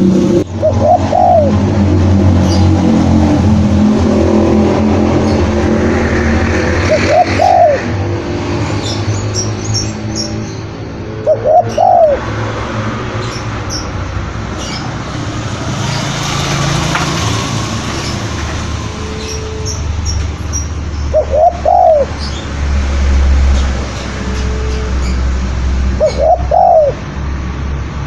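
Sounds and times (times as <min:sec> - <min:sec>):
dove cooing: 0:00.6 - 0:01.7, 0:06.8 - 0:08.0, 0:11.0 - 0:13.6, 0:21.1 - 0:22.4, 0:25.9 - 0:27.1.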